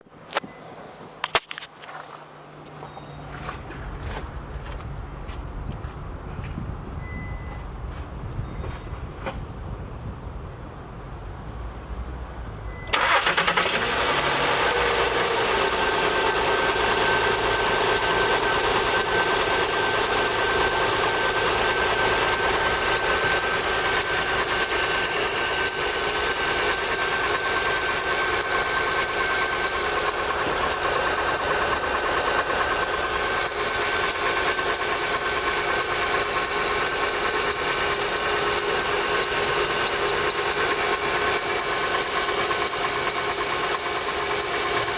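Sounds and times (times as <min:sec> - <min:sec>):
car engine starting: 0:12.7 - 0:44.9
engine knocking: 0:13.0 - 0:44.9.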